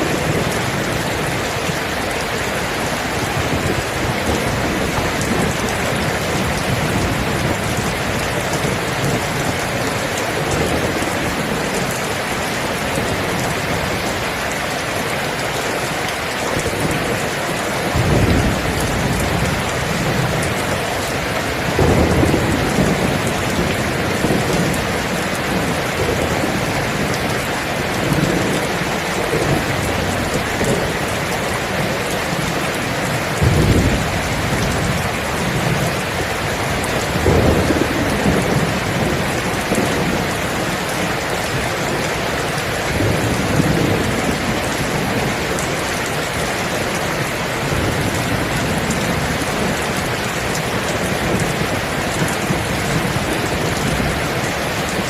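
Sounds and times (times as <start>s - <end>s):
thunder rumbling: 0.0s - 14.2s, 16.3s - 55.0s
heavy rain: 0.0s - 55.0s.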